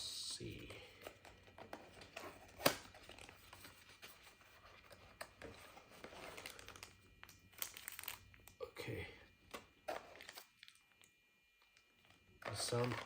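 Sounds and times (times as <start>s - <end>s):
plastic and cardboard rustling: 0.9s - 8.2s, 12.4s - 13.0s.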